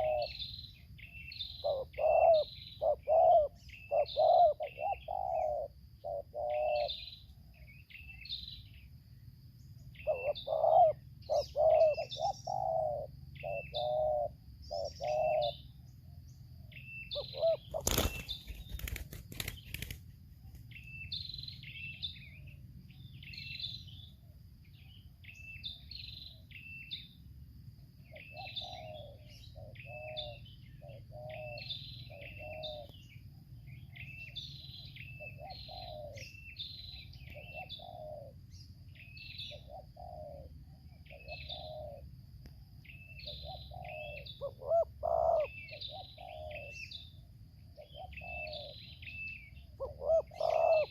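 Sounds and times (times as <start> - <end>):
doves cooing: 0.0 - 0.5, 1.5 - 7.1, 10.0 - 15.6, 17.1 - 20.6, 28.1 - 33.1, 35.0 - 38.7, 39.4 - 42.1, 43.2 - 47.0, 47.8 - 50.9
small birds chirping: 0.0 - 50.9
wing flapping: 17.7 - 20.7.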